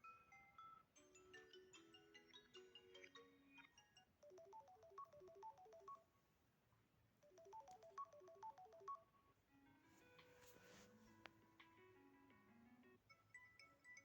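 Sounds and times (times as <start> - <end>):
bell-like ringtone notes: 4.2 - 6.0, 7.2 - 9.1.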